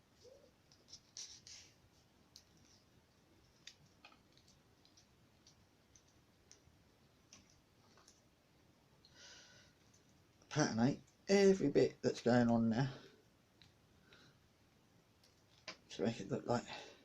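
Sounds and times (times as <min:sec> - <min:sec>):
light scratchy sounds: 0:00.0 - 0:08.3
faint clicks: 0:02.3 - 0:08.3.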